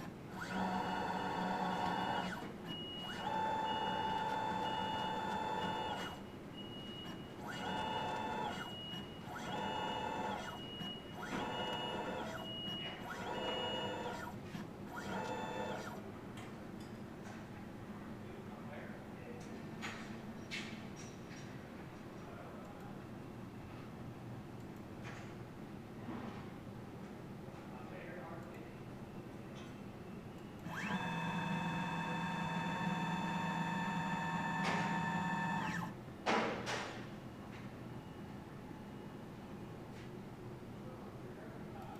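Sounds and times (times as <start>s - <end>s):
drive motor whining: 0.0s - 6.2s, 7.0s - 16.0s, 30.6s - 36.0s.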